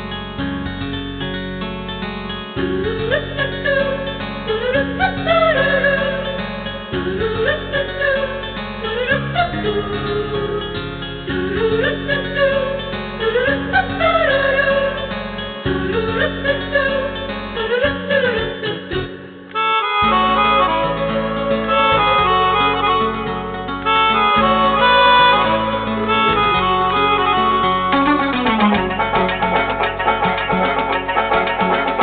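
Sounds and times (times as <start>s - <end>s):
melodic lead over chords: 19.3s - 32.0s.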